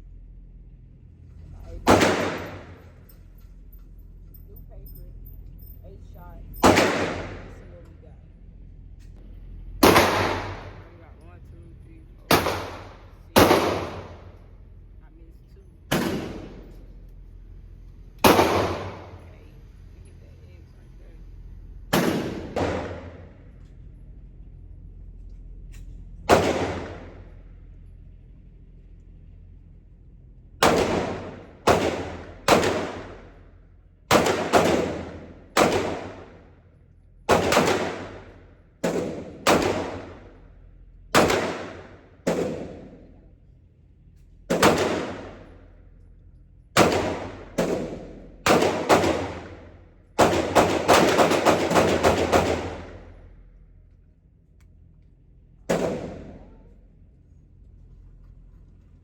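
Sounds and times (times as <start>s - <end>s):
pistol shots with echo: 1.8s - 3.0s, 6.5s - 7.7s, 9.8s - 10.9s, 12.3s - 14.4s, 15.9s - 17.0s, 18.2s - 19.3s, 21.9s - 23.5s, 26.3s - 27.4s, 30.6s - 33.4s, 34.1s - 36.6s, 37.3s - 40.5s, 41.1s - 43.2s, 44.5s - 45.7s, 46.8s - 53.3s, 55.7s - 56.5s.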